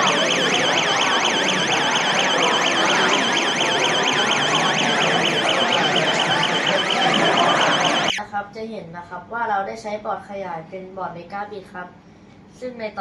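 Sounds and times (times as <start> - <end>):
electronic alarm siren warbling: 0.0 - 8.2.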